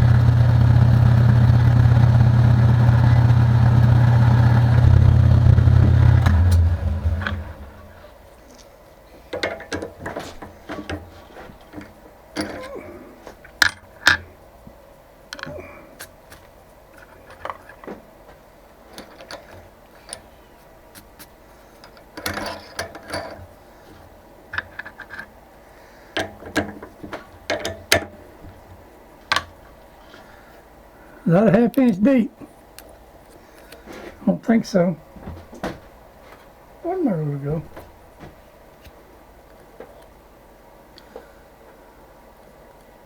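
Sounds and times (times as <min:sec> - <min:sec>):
metal tools clinking: 0:12.4 - 0:12.8, 0:21.8 - 0:23.6.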